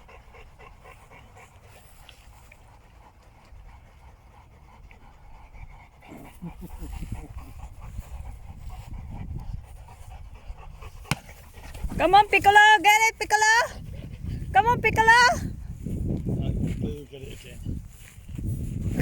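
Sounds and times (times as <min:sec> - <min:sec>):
dogs panting and scuffling: 0:00.0 - 0:19.0
dog grunting: 0:06.0 - 0:07.7.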